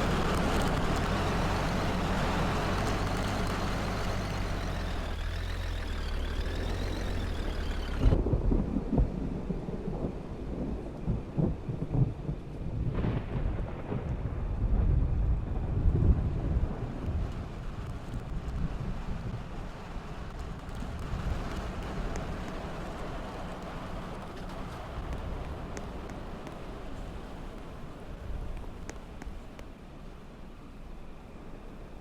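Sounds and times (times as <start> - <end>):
vehicle road noise with whine: 0.0 - 32.0
storm wind buffeting microphone: 6.8 - 29.6.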